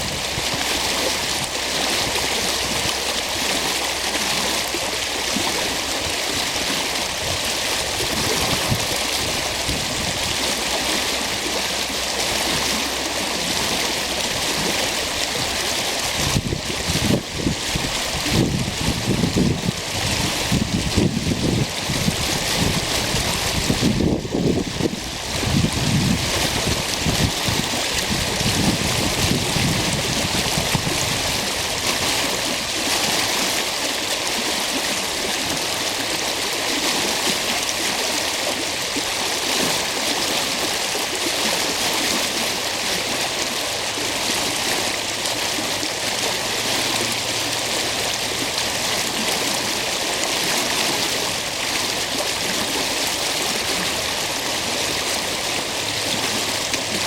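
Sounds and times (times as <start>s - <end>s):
wind buffeting microphone: 0.0s - 0.6s, 6.0s - 10.5s, 15.3s - 32.6s
stream water rushing: 0.0s - 57.0s.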